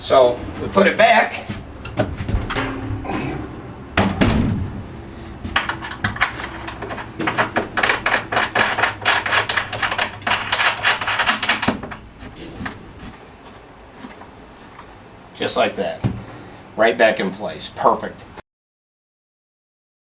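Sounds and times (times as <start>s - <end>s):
knocks: 4.0s - 4.7s.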